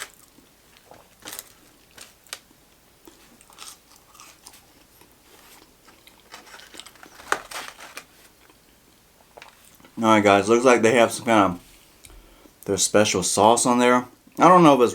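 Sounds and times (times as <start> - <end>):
soft eating crunches: 0.0 - 10.0.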